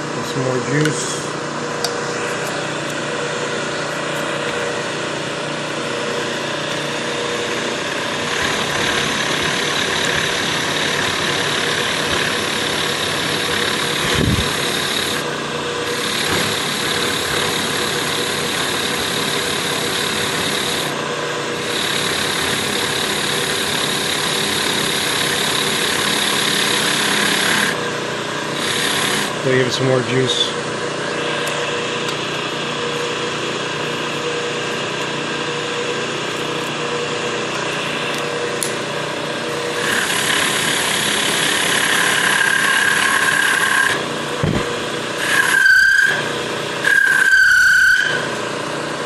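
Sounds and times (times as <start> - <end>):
milling cutter cutting steel: 6.1 - 29.8, 36.3 - 48.5.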